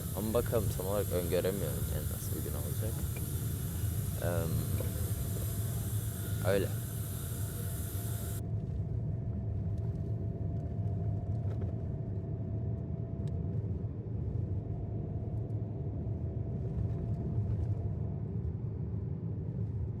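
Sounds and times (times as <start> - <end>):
faint ticks: 0.0 - 8.4
faint steady hum: 0.0 - 20.0.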